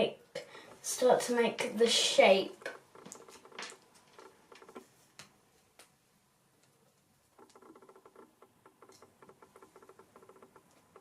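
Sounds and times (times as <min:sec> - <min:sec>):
faint scratching patter: 0:00.9 - 0:05.3, 0:06.6 - 0:11.0
small clicks: 0:06.6 - 0:11.0.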